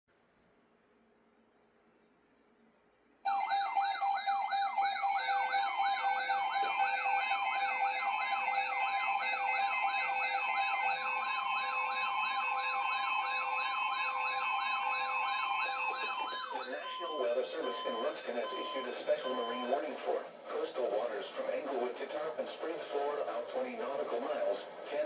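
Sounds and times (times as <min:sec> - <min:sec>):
steady alert tones: 0:03.3 - 0:19.8
short beeps: 0:16.2 - 0:19.8.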